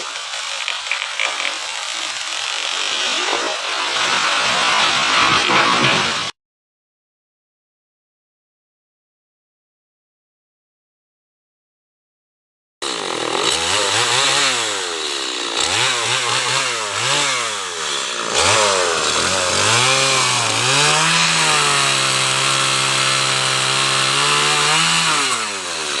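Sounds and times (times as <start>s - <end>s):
chainsaw revving: 0.0s - 4.3s, 12.8s - 26.0s.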